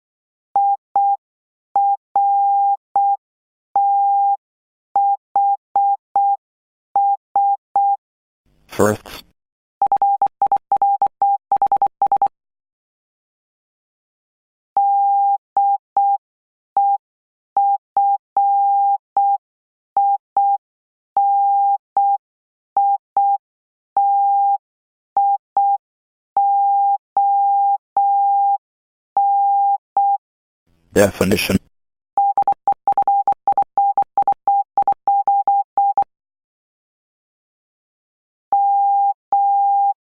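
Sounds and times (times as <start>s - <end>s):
morse code beeps: 9.8s - 12.3s, 32.2s - 36.1s, 38.6s - 40.0s.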